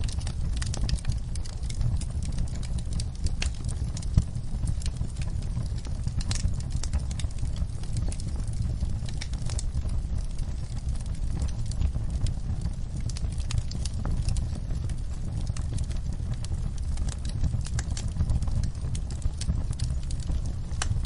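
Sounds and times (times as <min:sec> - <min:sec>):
sharp pops and snaps of fire: 0:00.0 - 0:21.0
wood fire crackling: 0:00.0 - 0:21.0.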